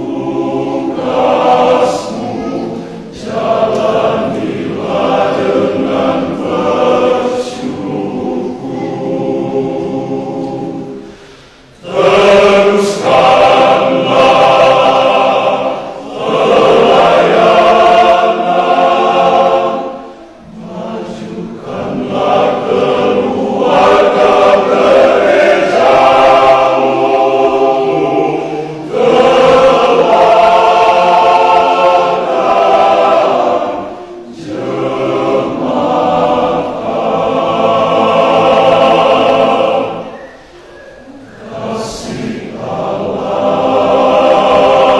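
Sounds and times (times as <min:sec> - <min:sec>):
men's choir singing: 0:00.0 - 0:44.9
singers breathing: 0:11.0 - 0:11.8, 0:28.4 - 0:28.8.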